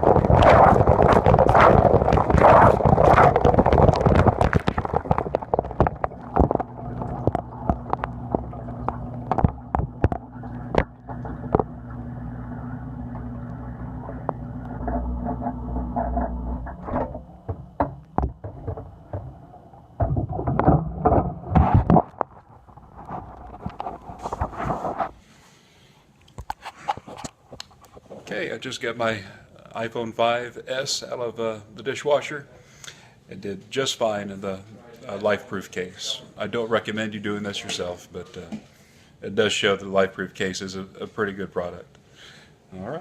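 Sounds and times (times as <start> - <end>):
dishwasher motor hum: 0.0 - 21.7
water drips and clicks: 0.0 - 22.4
loud knocks: 16.0 - 19.4, 20.0 - 22.1.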